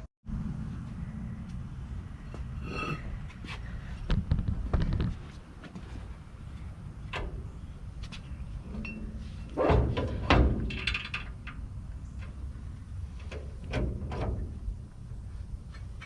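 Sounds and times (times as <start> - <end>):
metal tools clanking and knocking: 2.6 - 3.1.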